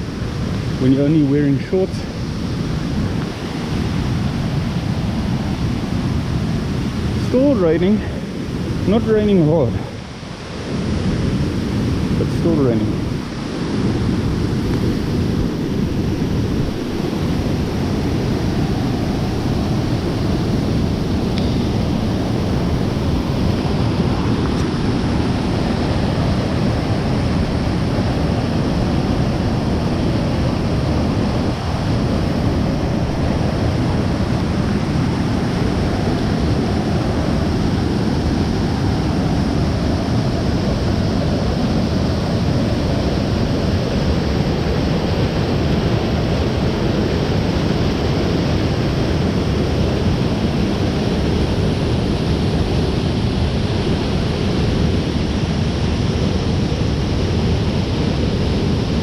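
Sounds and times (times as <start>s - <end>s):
waterfall rushing: 6.6s - 37.5s.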